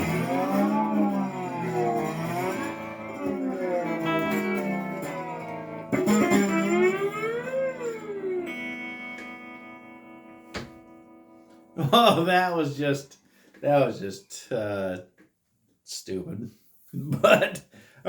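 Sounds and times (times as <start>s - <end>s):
electric guitar chords: 0.0s - 12.2s.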